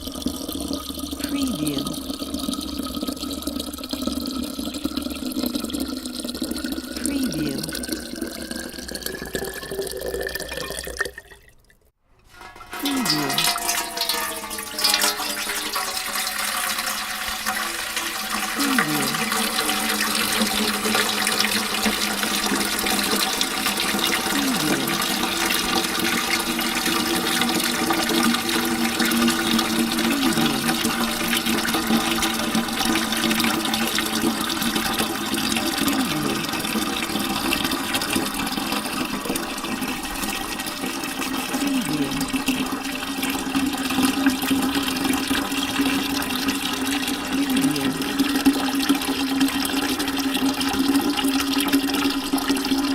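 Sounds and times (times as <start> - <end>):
water pouring into a bucket: 0.0 - 52.9.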